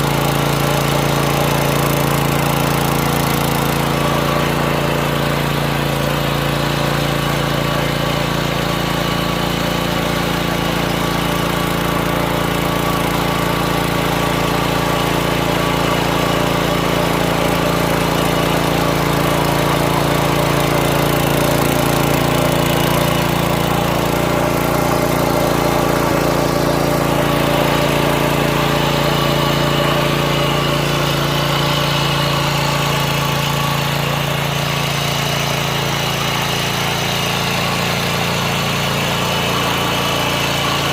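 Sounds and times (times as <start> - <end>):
small engine running: 0.0 - 40.9.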